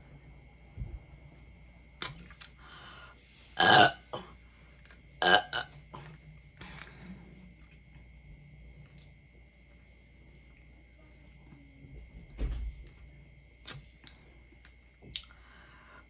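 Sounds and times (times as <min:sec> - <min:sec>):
woman belching loudly: 0:03.6 - 0:04.2, 0:05.2 - 0:05.7.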